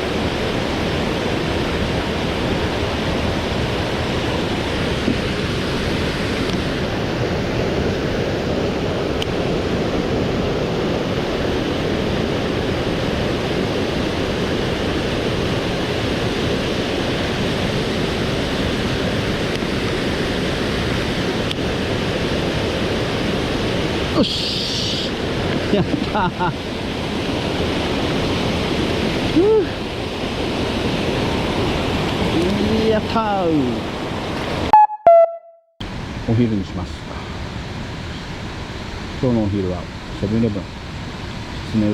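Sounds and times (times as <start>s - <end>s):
mountain stream rushing: 0.0s - 34.7s, 35.8s - 41.9s.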